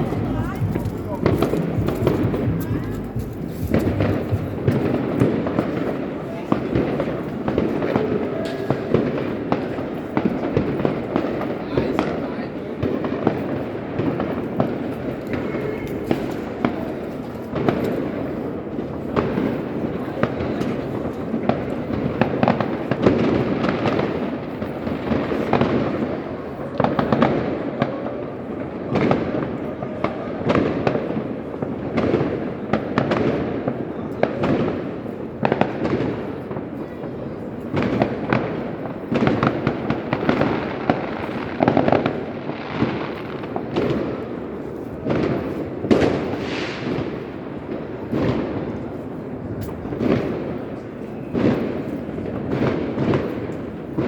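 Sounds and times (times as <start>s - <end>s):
rumble of distant blasts: 0.0s - 8.4s
firecrackers banging and crackling: 0.0s - 54.0s.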